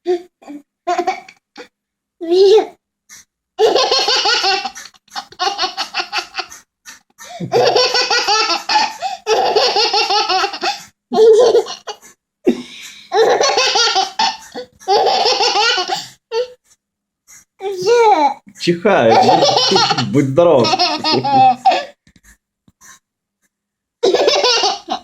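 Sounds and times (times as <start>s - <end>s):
little girl laughing: 3.6s - 6.5s, 7.2s - 12.0s, 19.1s - 22.0s, 24.0s - 25.0s.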